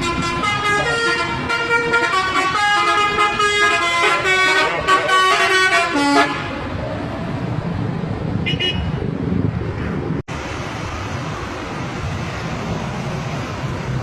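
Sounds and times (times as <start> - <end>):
bus musical horn tune: 0.0 - 6.5
high horn toot: 0.0 - 6.6
engine and road rumble: 0.0 - 14.0.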